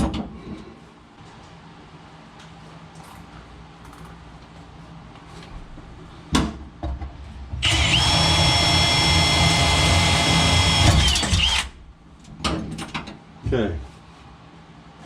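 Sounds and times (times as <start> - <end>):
power drill whining: 7.6 - 11.8.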